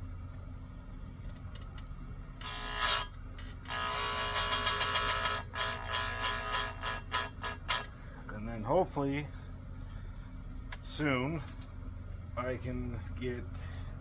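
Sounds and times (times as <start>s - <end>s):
grinding wheel on chain cutters: 2.4s - 7.9s.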